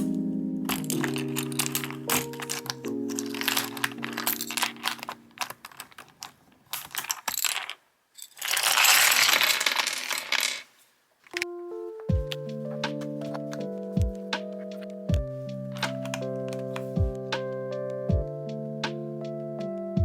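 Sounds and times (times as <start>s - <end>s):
background music: 0.0s - 5.9s, 11.4s - 20.0s
mechanical keyboard typing: 0.7s - 7.6s, 15.8s - 16.8s.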